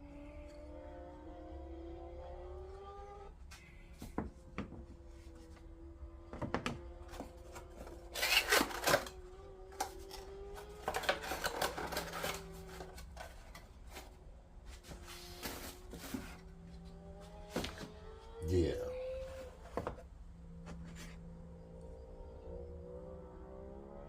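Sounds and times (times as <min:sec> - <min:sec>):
packaging rustling: 0:07.1 - 0:16.6.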